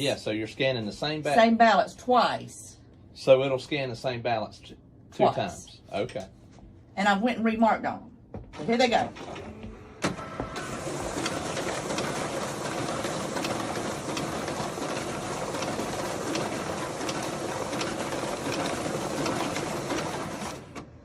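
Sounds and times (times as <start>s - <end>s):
ballot scanner running: 8.6s - 20.9s
paper sheet feed clicks: 10.0s - 20.9s.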